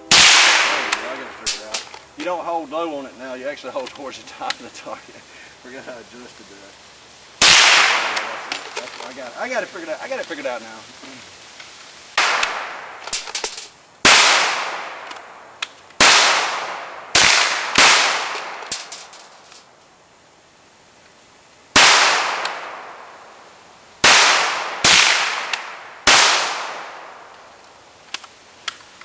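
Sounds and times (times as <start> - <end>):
rifle shots with echo: 0.1 - 1.8, 7.4 - 8.6, 12.2 - 13.4, 14.0 - 15.4, 16.0 - 19.0, 21.8 - 23.2, 24.0 - 27.3.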